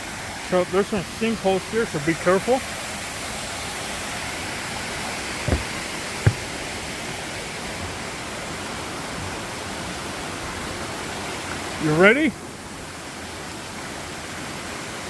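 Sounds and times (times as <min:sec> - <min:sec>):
short knocks: 0:05.5 - 0:07.2.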